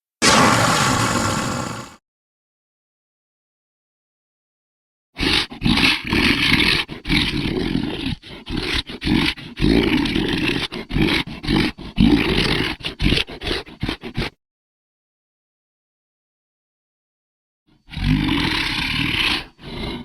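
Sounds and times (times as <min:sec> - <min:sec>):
monster roaring: 0:00.2 - 0:02.0.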